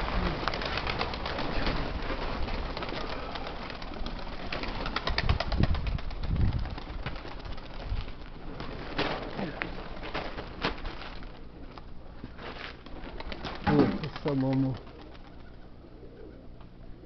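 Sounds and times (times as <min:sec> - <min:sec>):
pigeons cooing: 0:00.0 - 0:05.0, 0:11.6 - 0:17.0
strong wind on microphone: 0:05.1 - 0:07.0.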